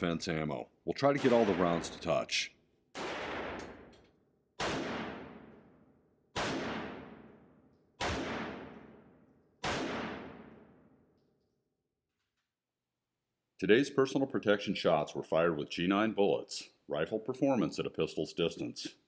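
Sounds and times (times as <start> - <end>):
pistol shots with ringing echo: 1.1 - 2.2, 2.9 - 3.9, 4.6 - 11.1.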